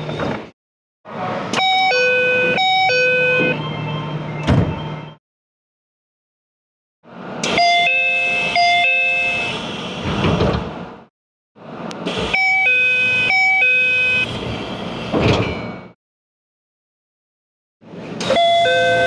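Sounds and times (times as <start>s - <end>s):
train doors closing thump: 4.4s - 4.8s, 9.9s - 10.8s, 15.0s - 15.7s
train car noise: 7.1s - 16.0s.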